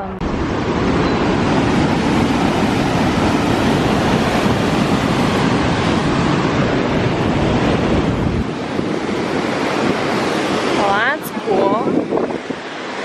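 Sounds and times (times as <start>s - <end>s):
fast-flowing river rushing: 0.2s - 13.0s.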